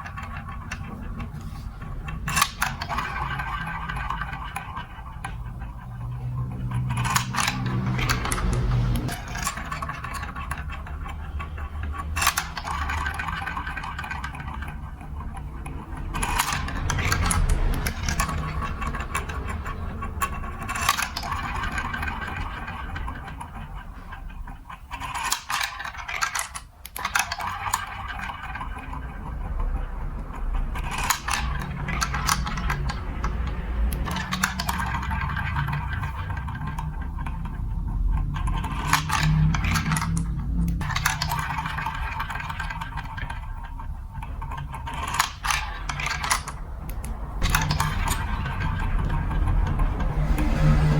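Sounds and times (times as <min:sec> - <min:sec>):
marbles rolling through plastic track: 0:00.0 - 0:50.9.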